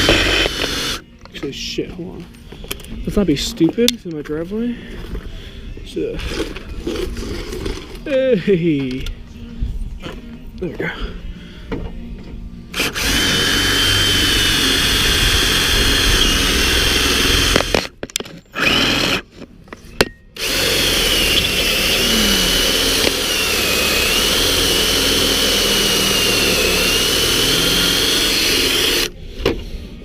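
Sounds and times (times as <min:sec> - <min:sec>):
power drill whining: 0:00.0 - 0:01.0, 0:12.7 - 0:17.9, 0:18.5 - 0:19.4, 0:20.4 - 0:29.2.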